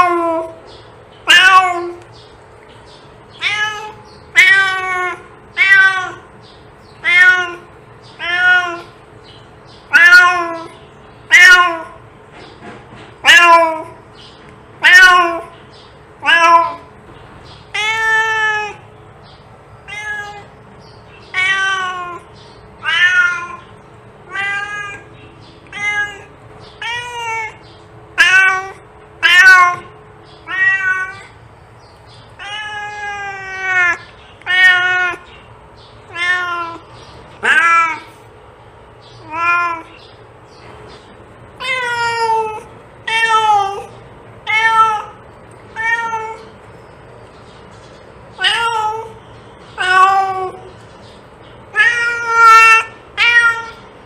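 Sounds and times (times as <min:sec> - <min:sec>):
cat meowing: 0:00.0 - 0:00.6, 0:01.2 - 0:02.1, 0:03.3 - 0:06.3, 0:07.0 - 0:09.0, 0:09.9 - 0:12.0, 0:13.2 - 0:14.0, 0:14.8 - 0:15.6, 0:16.2 - 0:16.9, 0:17.7 - 0:18.8, 0:19.8 - 0:20.6, 0:21.2 - 0:31.4, 0:32.4 - 0:35.3, 0:36.1 - 0:38.2, 0:39.2 - 0:40.0, 0:41.6 - 0:46.6, 0:48.4 - 0:49.2, 0:49.8 - 0:50.7, 0:51.7 - 0:53.9.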